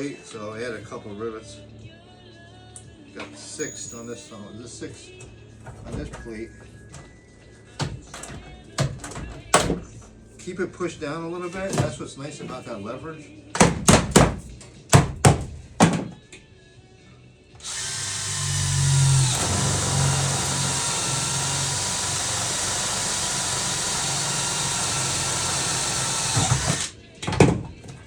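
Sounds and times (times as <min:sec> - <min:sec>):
electric drill boring metal: 0:17.6 - 0:27.0.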